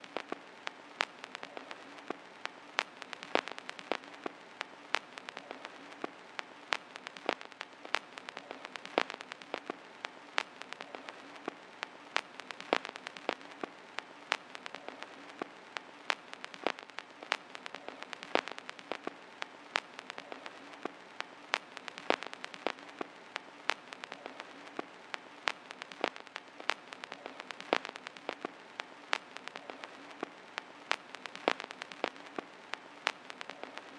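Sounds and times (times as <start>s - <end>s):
vinyl record hiss and crackles: 0.0s - 33.9s.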